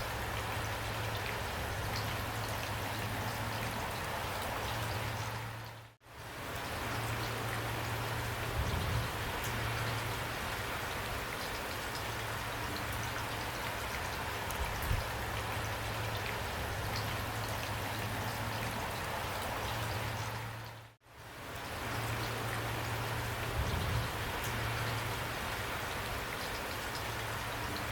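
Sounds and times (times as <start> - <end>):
heavy rain falling: 0.0 - 27.9.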